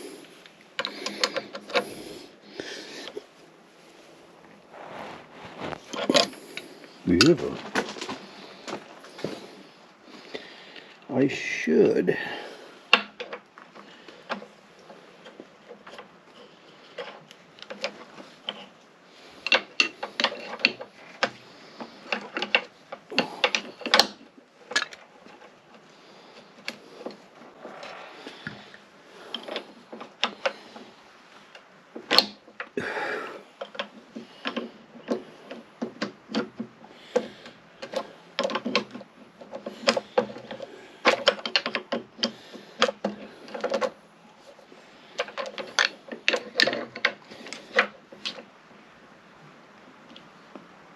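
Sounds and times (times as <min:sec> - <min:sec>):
short scraping sounds: 0:04.6 - 0:06.5, 0:26.8 - 0:29.9.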